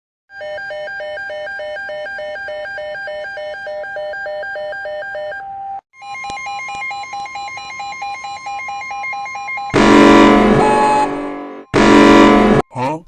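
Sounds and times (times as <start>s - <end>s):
electronic alert tone beeping: 6.2s - 12.6s.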